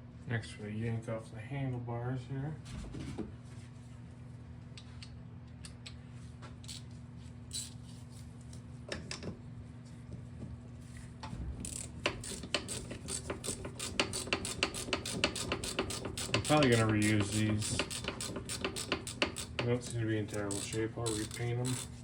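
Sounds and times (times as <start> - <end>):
ratchet clicking rapidly: 11.6 - 22.0.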